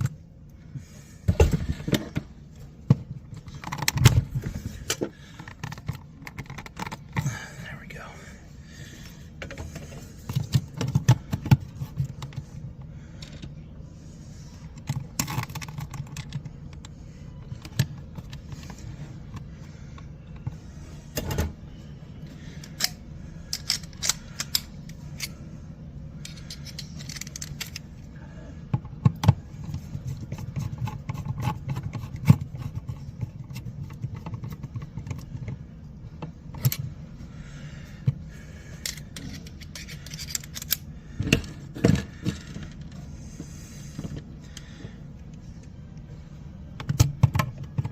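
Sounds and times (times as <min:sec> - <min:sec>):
metal parts lightly scraping: 0:26.2 - 0:27.9, 0:38.8 - 0:43.0.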